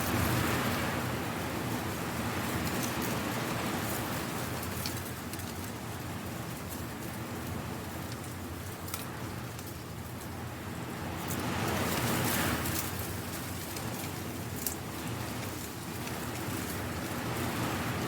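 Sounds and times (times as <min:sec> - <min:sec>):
dry leaves rustling in wind: 0:00.0 - 0:18.0
light crackling ticks: 0:04.4 - 0:05.8, 0:06.5 - 0:10.4, 0:11.2 - 0:16.8.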